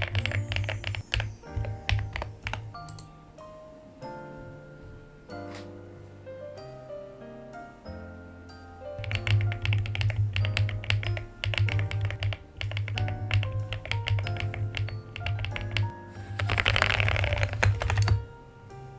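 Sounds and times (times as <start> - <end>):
rapid keyboard typing: 0.0 - 3.1, 9.0 - 18.4.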